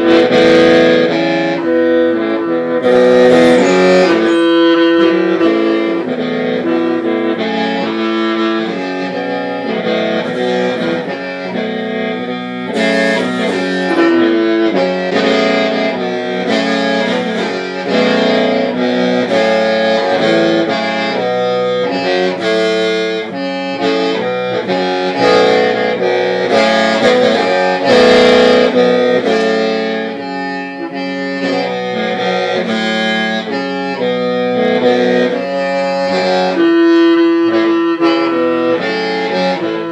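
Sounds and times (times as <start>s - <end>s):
bamboo mouth organ melody: 0.1s - 21.8s.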